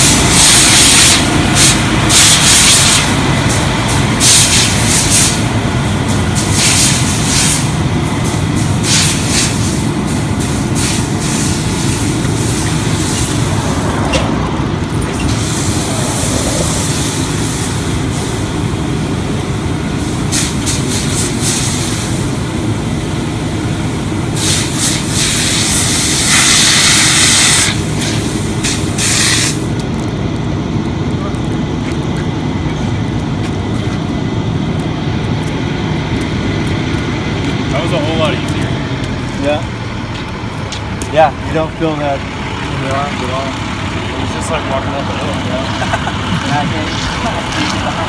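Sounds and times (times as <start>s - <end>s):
steady low rumble: 0.0s - 48.0s
hose nozzle spraying water: 6.1s - 7.7s.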